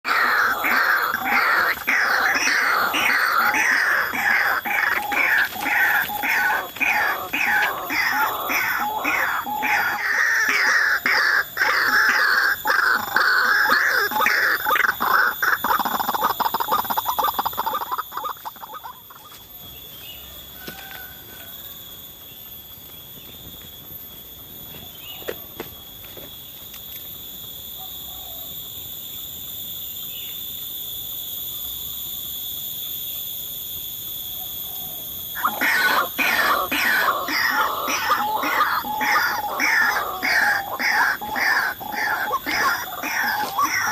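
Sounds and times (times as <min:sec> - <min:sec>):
bird harsh repeated calls: 0:00.0 - 0:19.4, 0:35.4 - 0:43.9
high-pitched drone: 0:00.0 - 0:27.6, 0:35.1 - 0:43.9.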